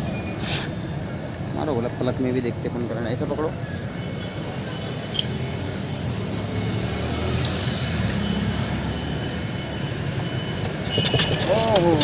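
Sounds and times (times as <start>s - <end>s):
scooter engine turning over: 10.6s - 12.0s.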